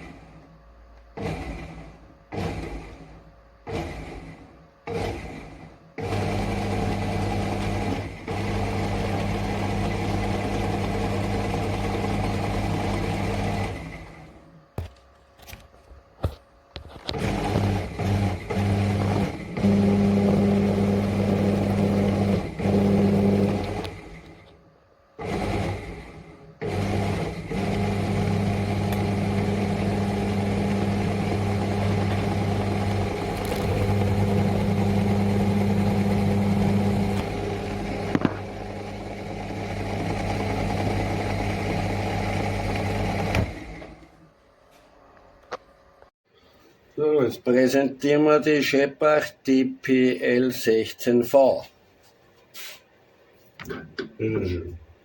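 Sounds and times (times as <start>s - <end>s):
electric motor humming: 6.0s - 14.9s, 17.1s - 24.4s, 25.2s - 43.9s.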